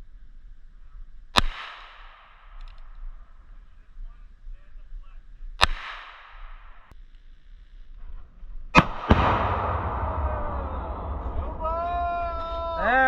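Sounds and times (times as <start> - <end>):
gunshots: 5.6 - 6.8, 8.8 - 13.0
explosive target blast: 8.8 - 13.0.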